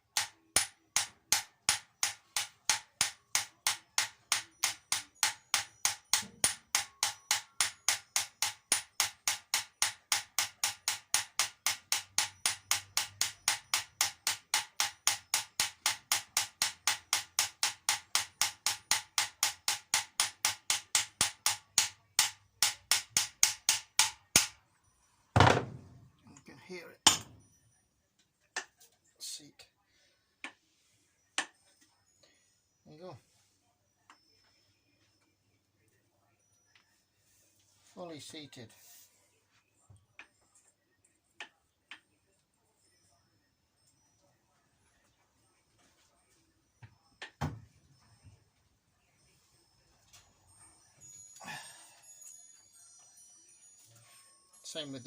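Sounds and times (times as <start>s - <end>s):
hammer tapping on metal socket: 0.1s - 24.5s.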